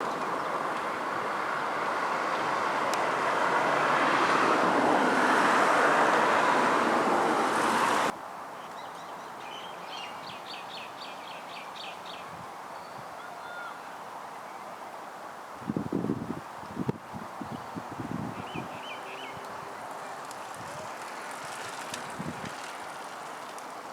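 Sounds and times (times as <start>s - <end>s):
outdoor rushing noise: 0.0s - 8.1s.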